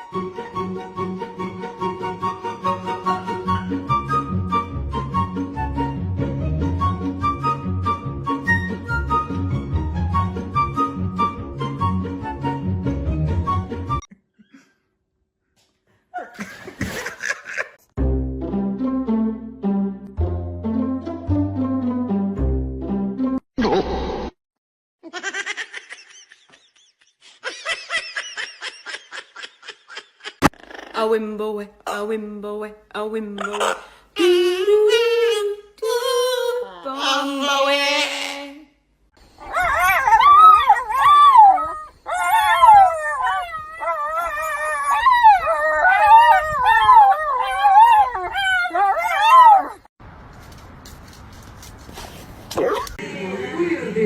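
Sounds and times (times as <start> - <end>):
person laughing: 16.2 - 17.8
dog howling: 39.4 - 49.9.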